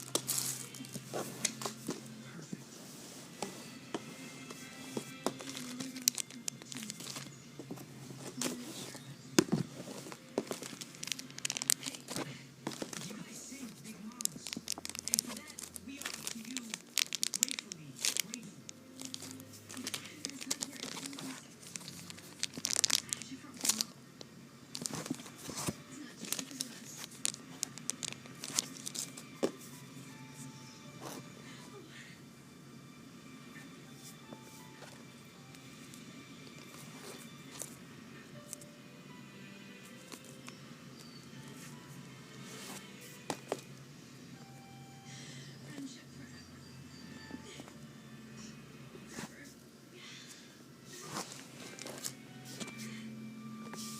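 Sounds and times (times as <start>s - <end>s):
plastic packaging crinkling: 5.2s - 7.3s, 10.1s - 24.0s, 24.7s - 29.6s.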